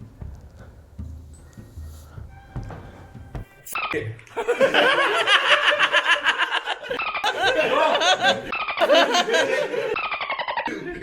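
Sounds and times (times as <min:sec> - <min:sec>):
group of people laughing: 0:04.3 - 0:11.0.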